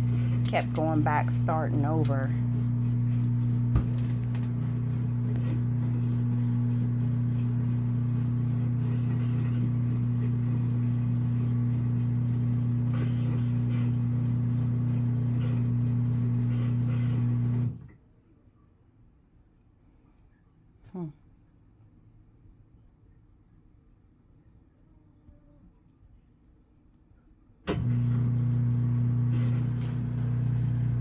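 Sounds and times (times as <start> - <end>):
drain pump humming: 0.0 - 17.9, 27.7 - 31.0.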